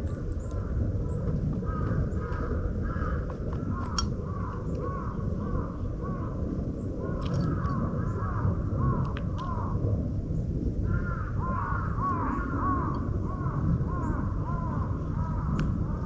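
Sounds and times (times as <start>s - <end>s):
crows cawing: 0.0s - 9.8s, 10.8s - 16.0s
small birds chipping: 0.0s - 9.8s
low background rumble: 0.0s - 16.0s.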